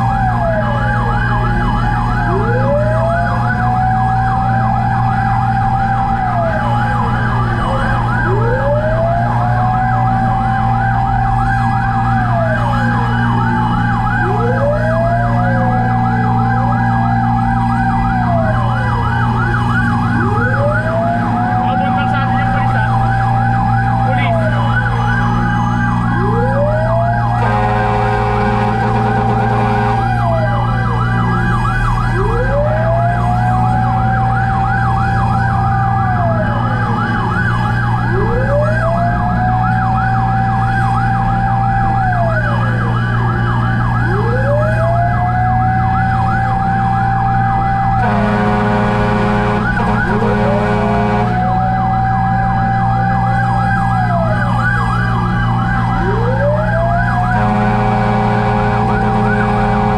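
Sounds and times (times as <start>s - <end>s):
fast siren yelp: 0.0s - 59.9s
siren wail: 0.0s - 59.9s
air horn blasts: 27.4s - 30.4s, 48.0s - 51.5s, 57.3s - 59.9s
low engine drone: 46.5s - 59.9s.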